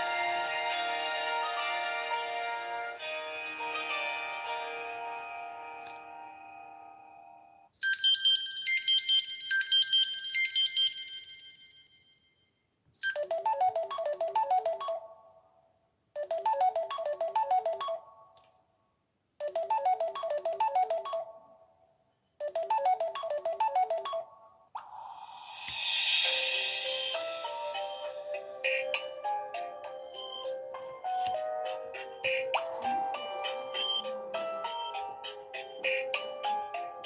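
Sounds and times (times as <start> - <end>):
high chime ringtone melody: 0.0 - 15.4, 16.2 - 18.2, 22.4 - 24.5, 25.3 - 37.0
ringtone with ticking beat: 7.8 - 12.2, 13.0 - 15.5, 16.2 - 18.4, 19.4 - 21.7, 22.4 - 24.6, 25.8 - 37.0.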